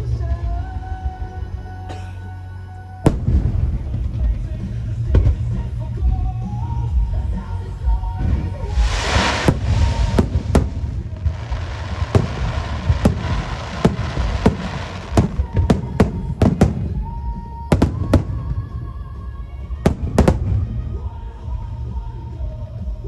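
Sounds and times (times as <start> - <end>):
music: 0.0 - 23.0
firework shells bursting: 3.1 - 3.8, 8.7 - 18.8, 19.9 - 20.9
firework hiss: 8.2 - 18.6, 19.9 - 20.7.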